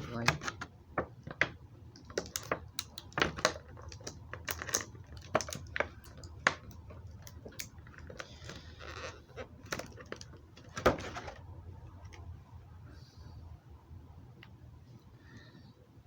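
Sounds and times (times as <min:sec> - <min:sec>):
plastic parts clicking: 0:01.3 - 0:11.4.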